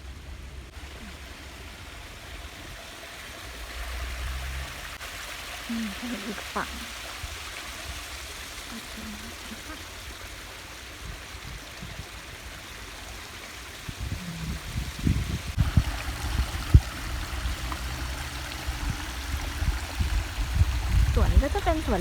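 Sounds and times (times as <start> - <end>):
stream water rushing: 0.0 - 22.0
wind buffeting microphone: 11.0 - 12.7, 13.7 - 22.0.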